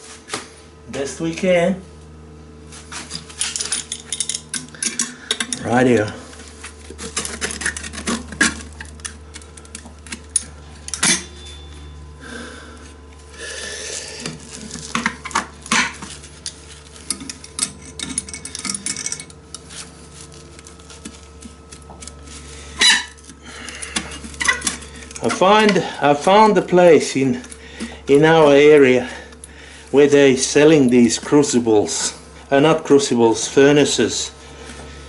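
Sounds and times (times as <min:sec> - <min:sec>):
steady low hum: 0:00.0 - 0:35.0
metal pieces clinking and clattering: 0:03.4 - 0:06.1, 0:15.7 - 0:19.4.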